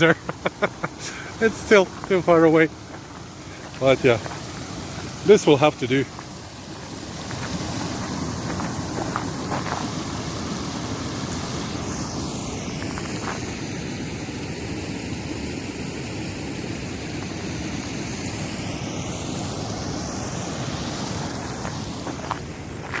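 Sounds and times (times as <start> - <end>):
water rushing over a weir: 0.0 - 23.0.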